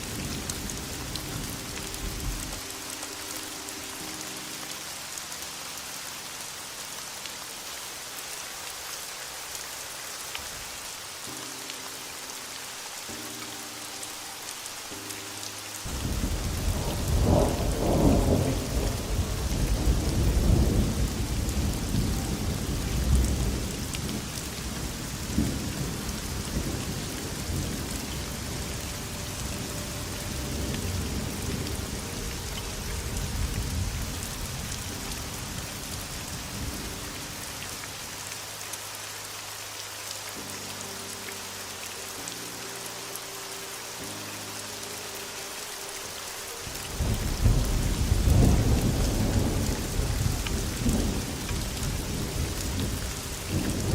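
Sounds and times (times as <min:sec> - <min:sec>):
heavy rain: 0:00.0 - 0:53.9
rolling thunder: 0:15.9 - 0:27.9, 0:47.0 - 0:53.9.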